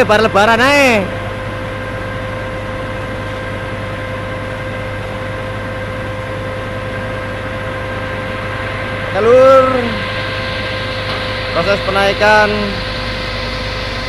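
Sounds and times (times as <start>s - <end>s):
pump engine droning: 0.0s - 14.0s
thin steady whine: 0.0s - 14.0s.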